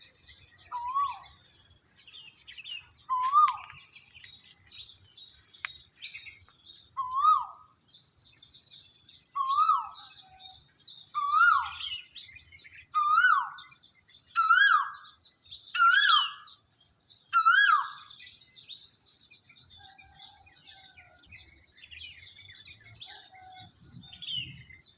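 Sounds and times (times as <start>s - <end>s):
bird calling: 0.7s - 7.7s, 11.1s - 12.1s, 13.0s - 13.8s, 14.4s - 15.2s, 15.8s - 16.5s, 17.4s - 18.2s.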